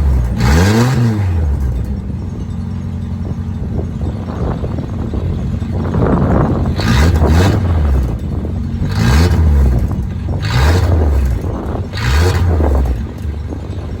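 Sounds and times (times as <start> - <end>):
car engine revving over idle: 0.0 - 14.0.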